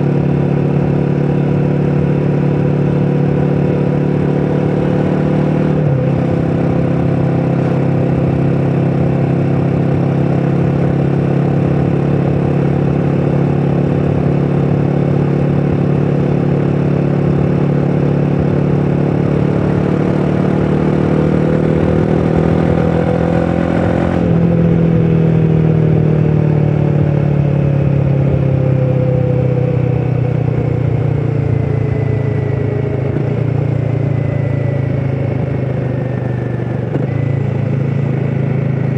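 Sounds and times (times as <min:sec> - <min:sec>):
motorcycle engine running under load: 0:00.0 - 0:38.9.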